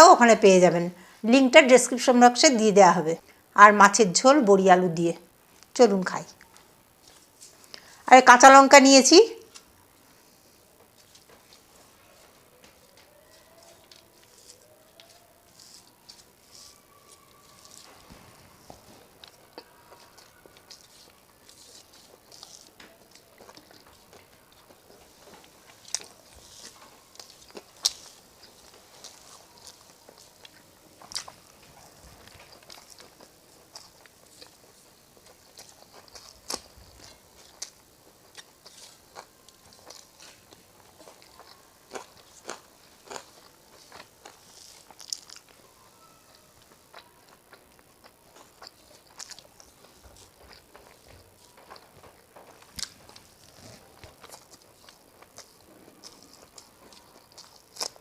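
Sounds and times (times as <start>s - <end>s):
chewing and mouth smacks: 12.6s - 45.6s, 46.6s - 58.0s.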